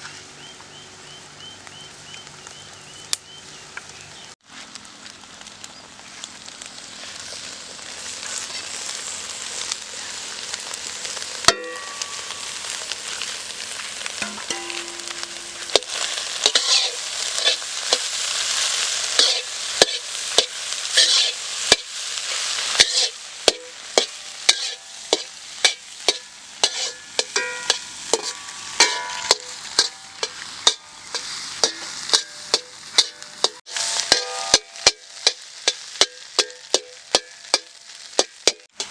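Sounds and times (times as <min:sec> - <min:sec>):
egg sizzling in pan: 0:04.4 - 0:38.9
metal spatula scraping pan: 0:14.2 - 0:21.9, 0:22.7 - 0:38.9.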